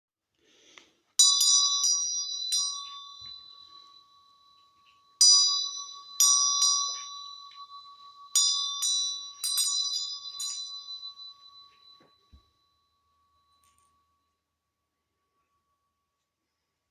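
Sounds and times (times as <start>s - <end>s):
small bell ringing: 1.2s - 16.5s.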